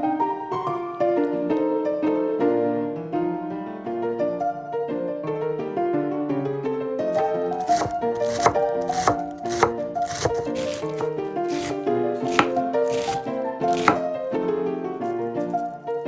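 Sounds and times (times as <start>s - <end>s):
knife chopping on cutting board: 7.2s - 14.1s, 15.0s - 15.8s.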